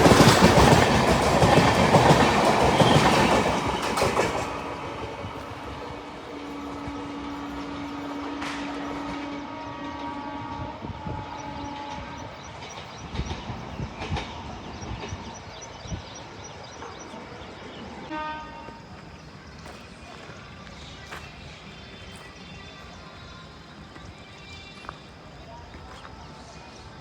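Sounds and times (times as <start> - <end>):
train wheels clattering over rail joints: 0.0 - 4.8, 12.5 - 17.5
train horn blast: 6.2 - 12.4, 18.0 - 19.0.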